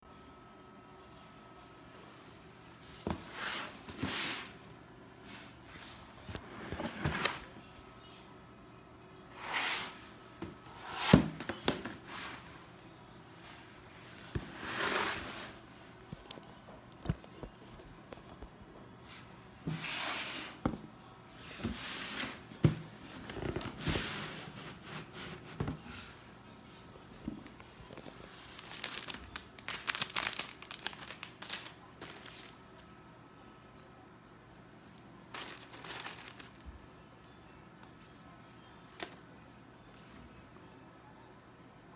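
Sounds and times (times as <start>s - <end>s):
packaging rustling: 27.5s - 32.6s, 35.3s - 36.7s.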